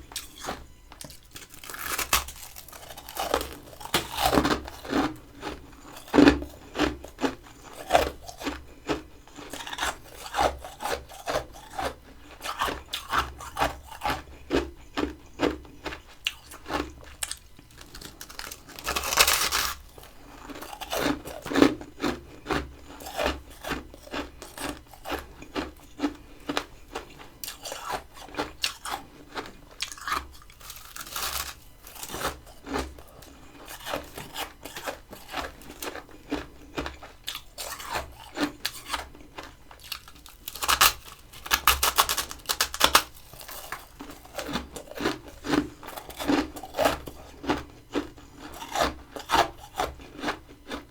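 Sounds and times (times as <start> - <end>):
chewing crunchy frost: 0.0 - 50.9.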